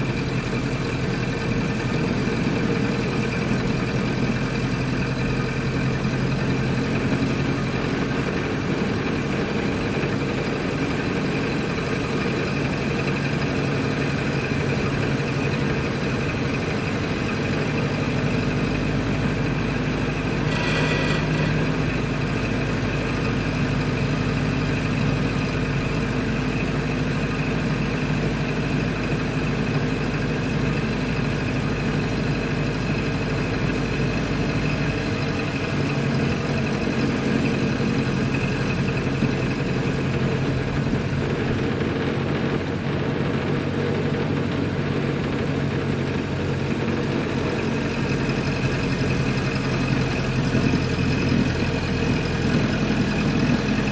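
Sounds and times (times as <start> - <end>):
car engine running: 0.0 - 53.9.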